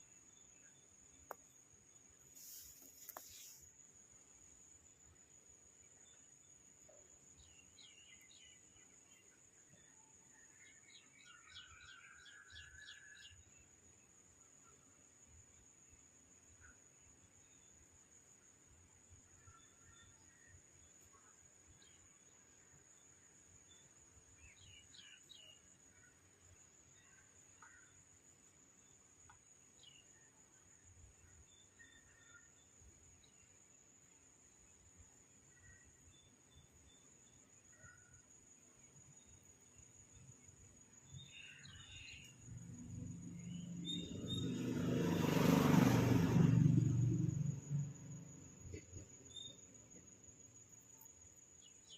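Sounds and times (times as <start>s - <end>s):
faint bird chirps: 0.0s - 44.7s, 47.0s - 51.9s
vehicle passing by: 42.9s - 48.6s.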